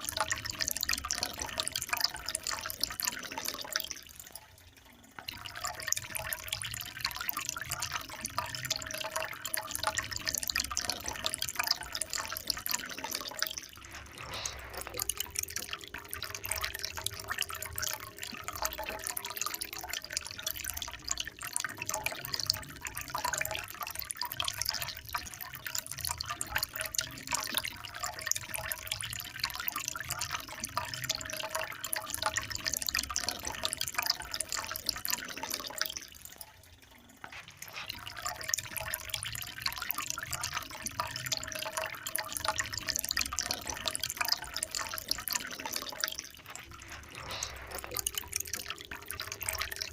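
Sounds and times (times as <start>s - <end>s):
trickling water: 0.0s - 49.9s.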